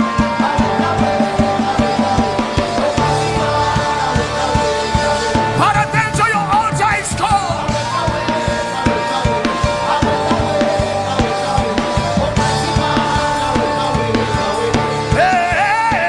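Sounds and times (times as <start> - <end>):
drum kit beat: 0.0 - 16.0
person singing: 0.0 - 16.0
sustained keyboard chords: 0.0 - 16.0.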